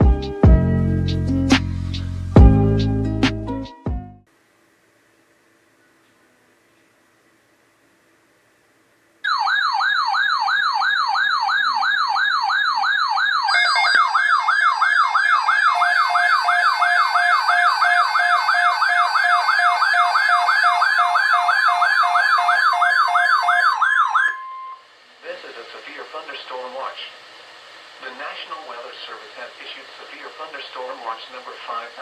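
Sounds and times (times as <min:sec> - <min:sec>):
electronic siren warbling: 0:09.2 - 0:24.8
pulsing alarm tone: 0:09.2 - 0:24.8
brief steady tone: 0:13.5 - 0:14.1, 0:24.3 - 0:24.9.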